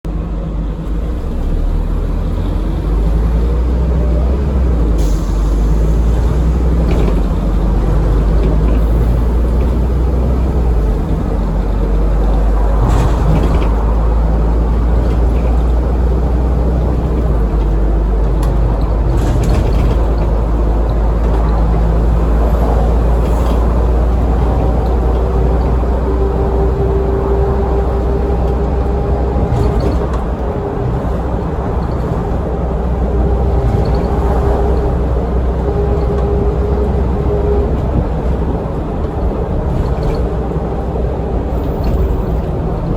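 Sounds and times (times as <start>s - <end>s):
bus diesel engine rumble: 0.0s - 42.9s
bus body rattles: 0.1s - 42.9s.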